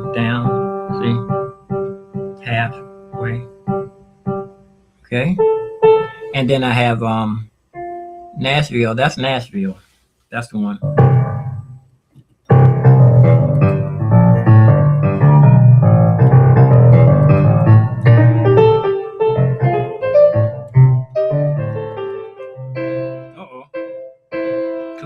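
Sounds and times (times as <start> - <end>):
digital piano chords: 0.0 - 9.4, 10.8 - 11.8, 12.5 - 25.0.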